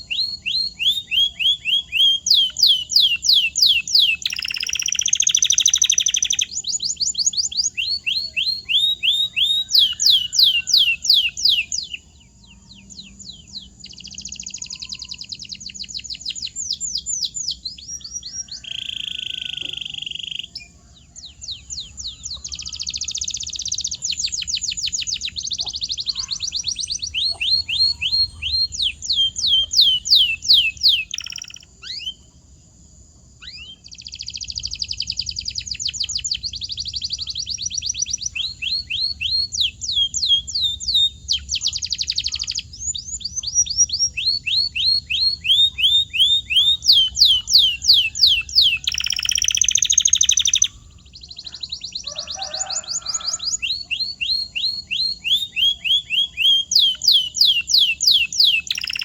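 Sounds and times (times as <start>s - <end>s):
canary singing: 0.0s - 32.5s, 33.3s - 59.0s.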